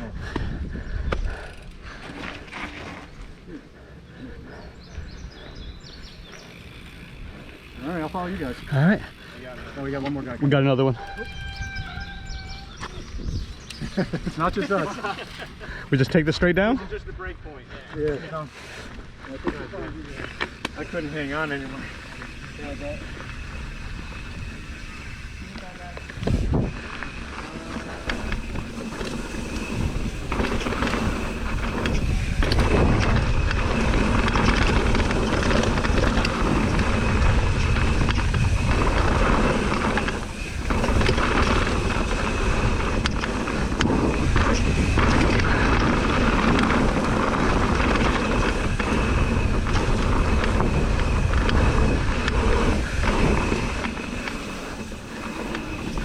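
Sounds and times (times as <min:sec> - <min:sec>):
wind rushing over microphone: 0:00.0 - 0:01.5, 0:11.1 - 0:15.2, 0:20.8 - 0:56.0
bike rattling: 0:00.0 - 0:56.0
tyres rumbling on trail: 0:00.0 - 0:56.0.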